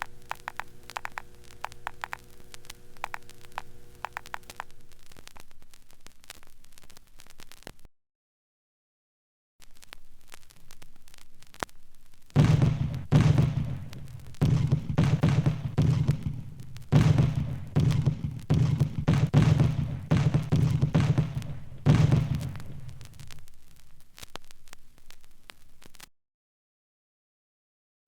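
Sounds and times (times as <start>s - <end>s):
faint record hiss: 0.0s - 7.9s, 9.6s - 26.1s
heavy ringing thuds: 12.4s - 23.0s.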